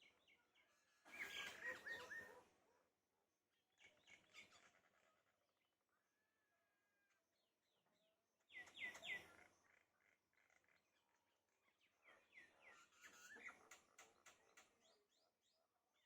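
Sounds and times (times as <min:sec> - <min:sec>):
birds calling faintly: 0:00.0 - 0:02.7, 0:07.1 - 0:16.0.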